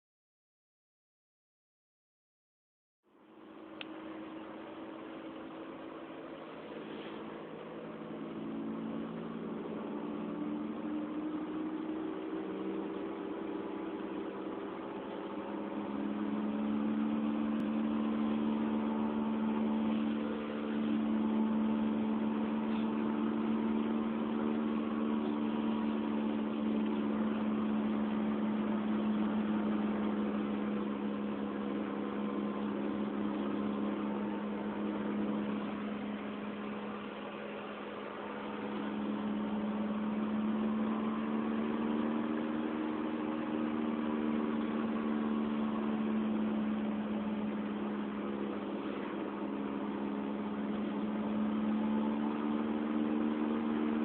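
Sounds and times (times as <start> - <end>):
road noise inside car: 3.1 - 54.0
wheel bearing droning: 3.2 - 54.0.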